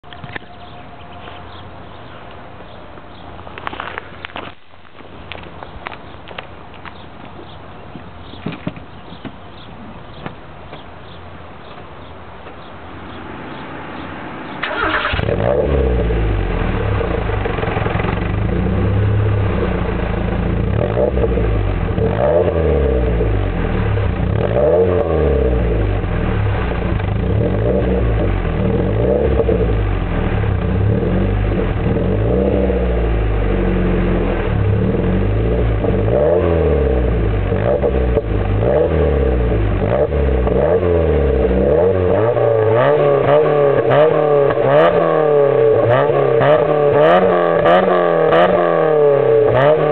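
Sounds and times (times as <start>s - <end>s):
car engine revving: 14.5s - 49.9s.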